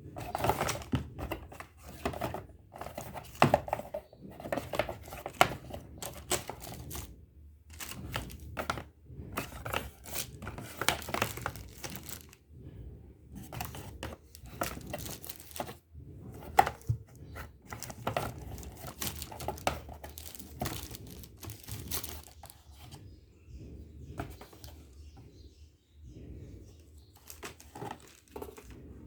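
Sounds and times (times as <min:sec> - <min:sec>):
packaging crinkling and rustling: 0:00.2 - 0:07.1, 0:07.7 - 0:12.4, 0:13.4 - 0:23.0, 0:27.2 - 0:28.8.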